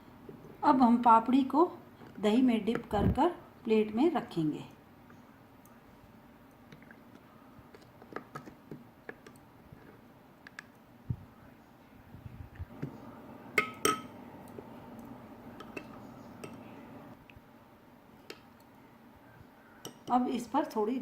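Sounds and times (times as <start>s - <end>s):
dishes clinking: 13.6s - 14.2s.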